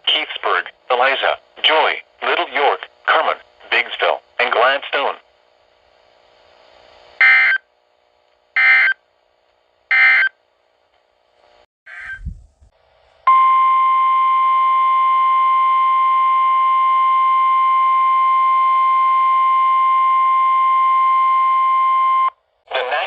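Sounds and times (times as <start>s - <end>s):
loud steady alarm tone: 7.2s - 7.7s, 8.6s - 9.0s, 9.9s - 10.4s.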